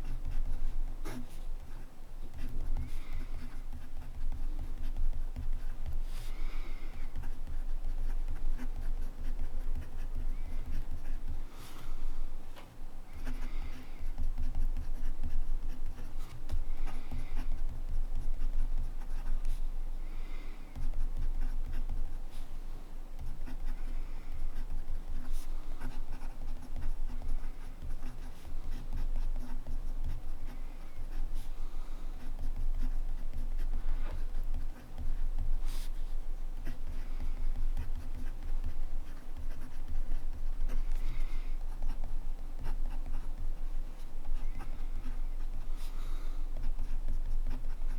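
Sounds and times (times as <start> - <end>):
low steady hum: 0.0 - 47.9
pen nib scratching paper: 23.2 - 31.5, 32.2 - 47.9.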